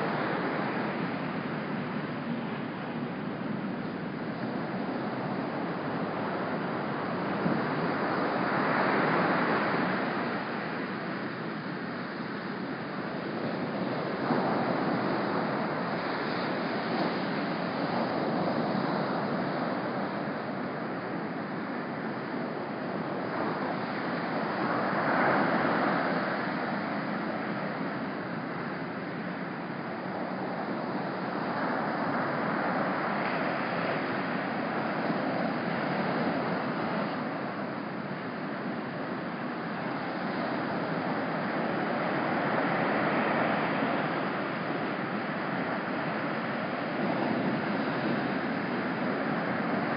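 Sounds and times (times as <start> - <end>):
ocean surf breaking: 23.2 - 49.9.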